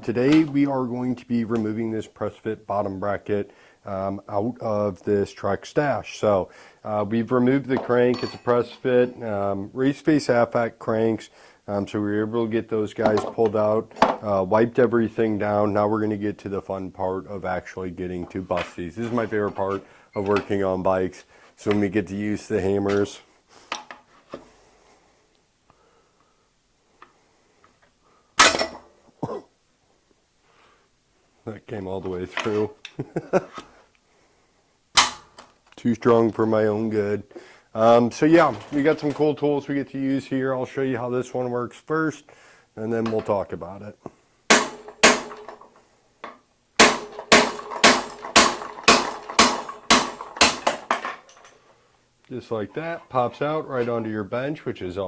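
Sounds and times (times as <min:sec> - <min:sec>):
hammer striking metal tool: 0:28.4 - 0:28.8, 0:35.0 - 0:35.4, 0:44.5 - 0:45.8, 0:46.8 - 0:51.1.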